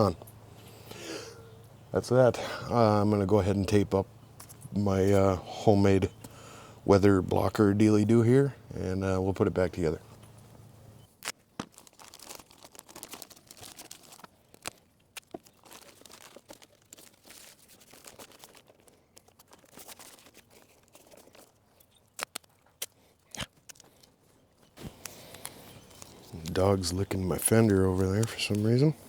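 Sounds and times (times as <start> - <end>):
plastic sheet crinkling: 11.1 - 24.1, 24.8 - 28.9
tape pulled and torn: 11.1 - 24.1.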